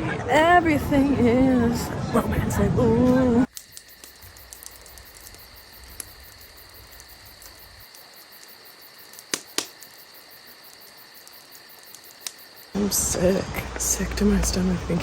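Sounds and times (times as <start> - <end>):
insects chirring: 3.4 - 13.2
faint rapid ticks: 3.5 - 12.8
sharp clicks: 9.1 - 10.0.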